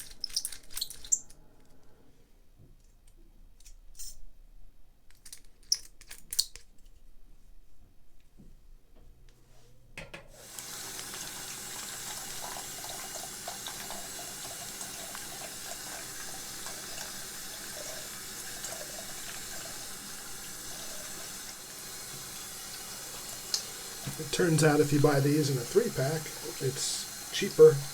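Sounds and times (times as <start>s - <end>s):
tap water running into sink: 10.4s - 27.9s.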